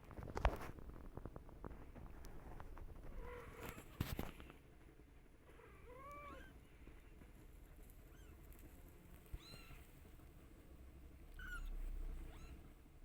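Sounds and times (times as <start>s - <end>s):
kittens mewing: 11.3s - 12.7s.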